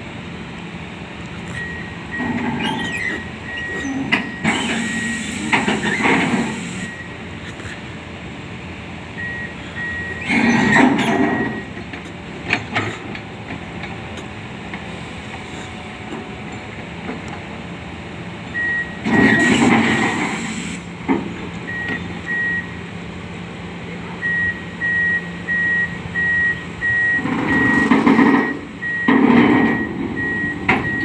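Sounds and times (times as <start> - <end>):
backhoe engine running: 0.0 - 31.0
reversing alarm beeping: 1.5 - 7.4, 9.1 - 11.8, 18.5 - 20.8, 21.6 - 22.8, 24.2 - 31.0.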